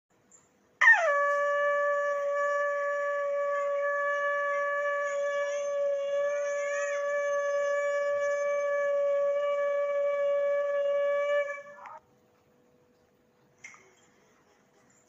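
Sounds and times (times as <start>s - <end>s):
conch shell blown in long note: 0.8s - 12.0s.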